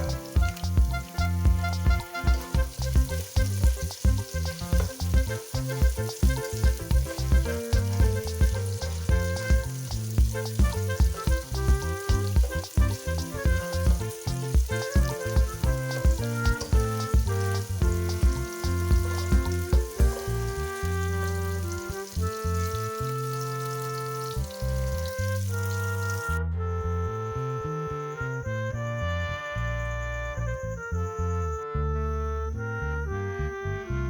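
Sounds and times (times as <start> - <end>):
music with heavy bass beat: 0.0 - 21.8
oil sizzling in a pan: 0.0 - 26.3.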